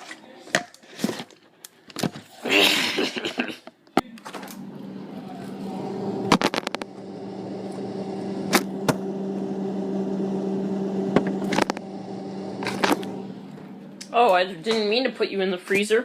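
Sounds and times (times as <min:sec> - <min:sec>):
kitchen appliance humming: 0:04.4 - 0:15.0
sharp clicks and pops: 0:06.3 - 0:06.9.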